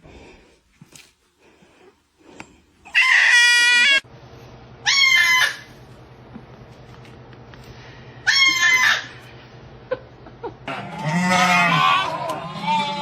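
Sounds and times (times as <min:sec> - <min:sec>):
high-pitched animal calls: 0:02.9 - 0:04.0, 0:04.8 - 0:05.7, 0:08.2 - 0:09.2, 0:10.7 - 0:13.0.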